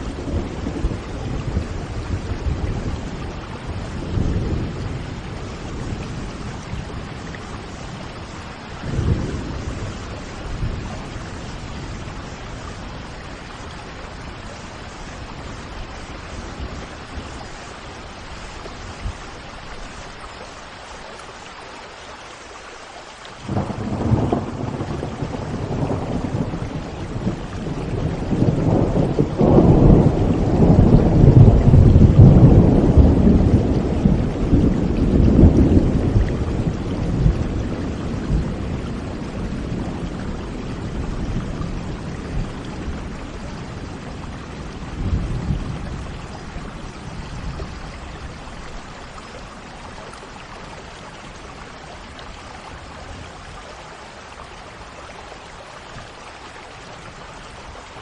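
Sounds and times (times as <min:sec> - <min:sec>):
rolling thunder: 0:00.0 - 0:17.7, 0:23.5 - 0:49.3
steady rain: 0:00.0 - 0:58.0.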